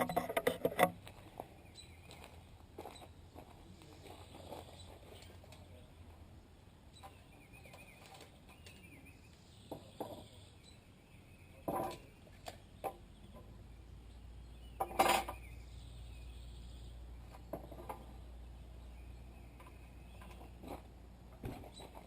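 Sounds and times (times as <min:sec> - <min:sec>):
boards and tools clattering: 0:00.0 - 0:01.1, 0:11.6 - 0:13.0, 0:14.8 - 0:15.4
faint bird chirps: 0:06.9 - 0:20.6.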